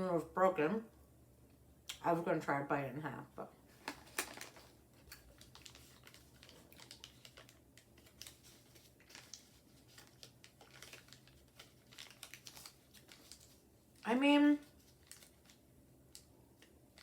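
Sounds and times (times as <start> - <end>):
low room hum: 0.0 - 17.0
person chewing chocolate bar: 5.0 - 8.4.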